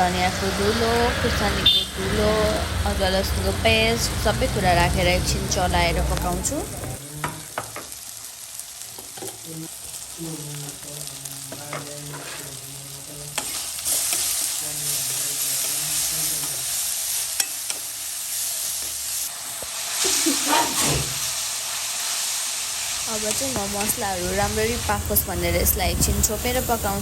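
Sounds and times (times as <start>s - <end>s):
spices sizzling in hot oil: 0.0s - 27.0s
spoon scraping a pan: 11.5s - 12.7s, 13.4s - 16.6s.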